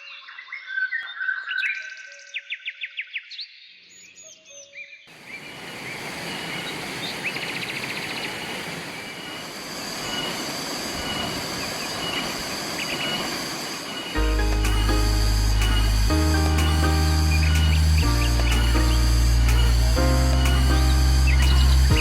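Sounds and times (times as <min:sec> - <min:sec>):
river water rushing: 0:05.1 - 0:22.0
birds chirping: 0:05.2 - 0:22.0.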